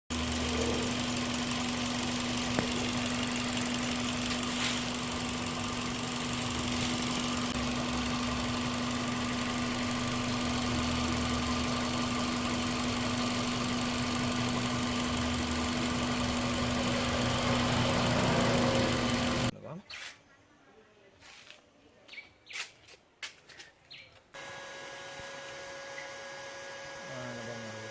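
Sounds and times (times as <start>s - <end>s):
car engine idling roughly: 0.1s - 19.5s.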